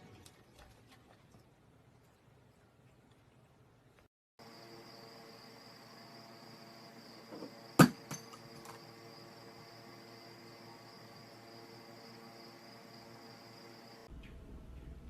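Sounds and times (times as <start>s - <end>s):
low hum: 4.4s - 15.0s.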